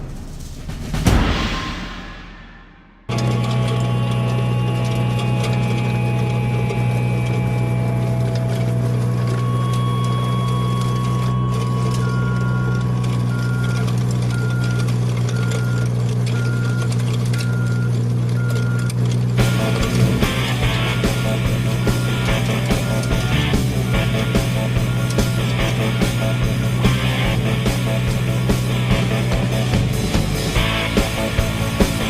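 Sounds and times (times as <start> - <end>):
skid steer engine running: 3.1 - 32.0
reversing alarm beeps: 9.2 - 19.8, 20.4 - 27.4.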